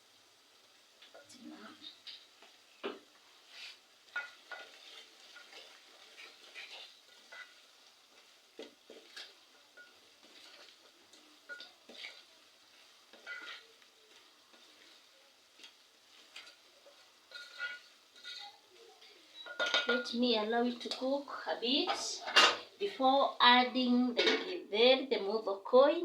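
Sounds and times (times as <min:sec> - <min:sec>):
vegetables sizzling: 0:00.0 - 0:26.0
spoon scraping a pot: 0:03.5 - 0:07.7, 0:08.6 - 0:10.8, 0:11.4 - 0:15.0, 0:15.6 - 0:18.6.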